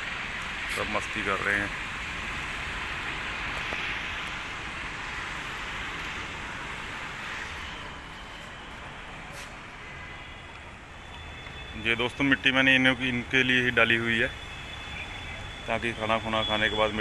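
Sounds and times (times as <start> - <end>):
rushing outdoor background noise: 0.0 - 17.0.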